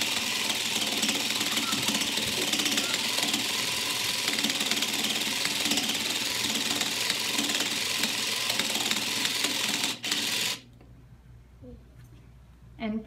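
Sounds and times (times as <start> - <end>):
toy felting machine chattering: 0.0 - 10.6.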